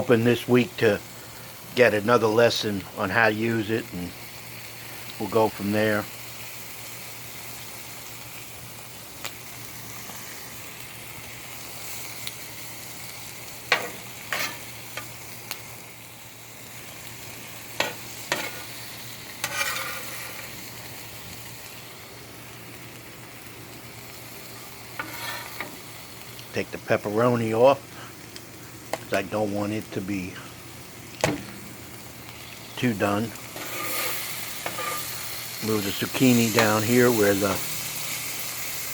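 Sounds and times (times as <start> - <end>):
vegetables sizzling on griddle: 0.0 - 38.9
utensil scraping griddle: 13.6 - 15.2, 17.7 - 20.9, 24.5 - 26.1, 32.8 - 38.9.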